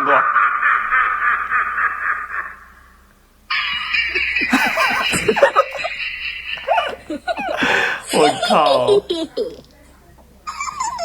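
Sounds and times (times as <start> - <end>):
snickering laughter: 3.5 - 9.7, 10.5 - 11.0.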